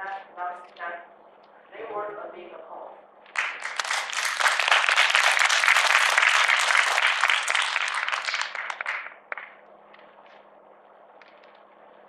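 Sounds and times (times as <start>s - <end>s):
audience applauding: 3.3s - 9.6s.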